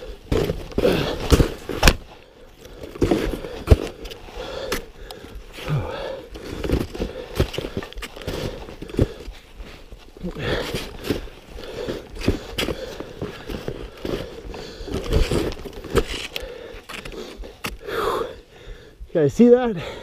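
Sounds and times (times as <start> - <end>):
snowshoe footsteps crunching snow: 6.4 - 17.7.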